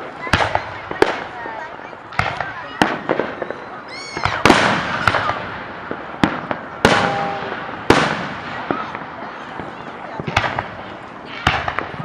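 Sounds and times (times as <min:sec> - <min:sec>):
fireworks bangs: 0:00.0 - 0:12.0
firework whistle: 0:06.8 - 0:07.6.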